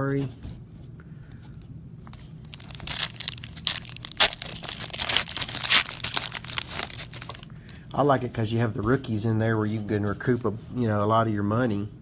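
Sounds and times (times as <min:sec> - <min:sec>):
wrapper crinkling and tearing: 0:02.1 - 0:07.5.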